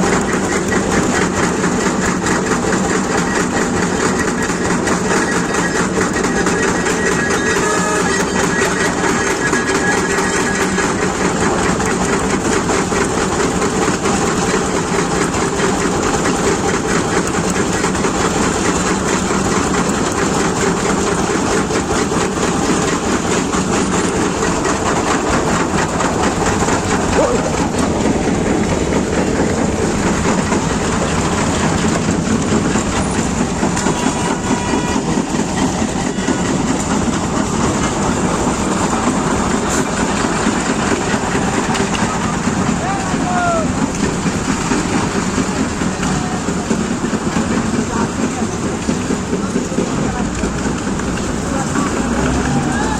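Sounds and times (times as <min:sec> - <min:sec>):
construction machinery engine drone: 0:00.0 - 0:52.9
fast mechanical clatter: 0:00.0 - 0:52.9.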